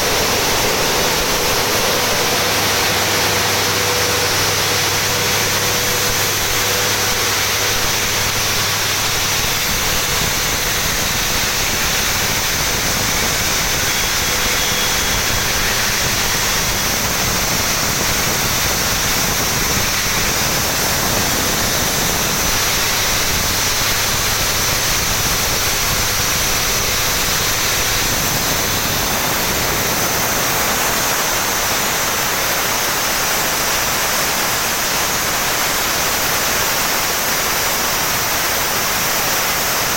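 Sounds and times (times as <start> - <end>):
steam turbine roar and hiss: 0.0 - 39.9.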